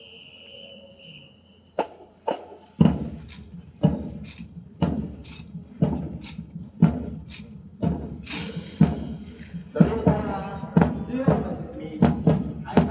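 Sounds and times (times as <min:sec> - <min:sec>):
faint high steady tone: 0:00.0 - 0:01.8
sharp ringing percussive strikes: 0:08.2 - 0:09.2.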